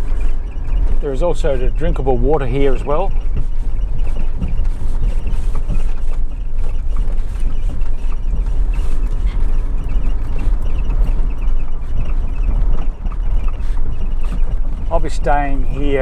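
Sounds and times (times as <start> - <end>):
vehicle low rumble: 0.0 - 16.0.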